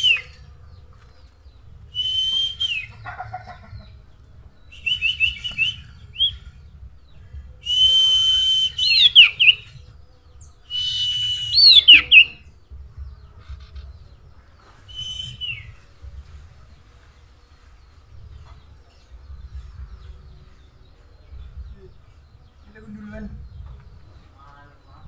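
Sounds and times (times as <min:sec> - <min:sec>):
bird singing whistled notes: 0:00.0 - 0:00.5, 0:01.9 - 0:03.2, 0:04.7 - 0:06.6, 0:07.6 - 0:09.9, 0:10.6 - 0:12.5, 0:14.8 - 0:16.2.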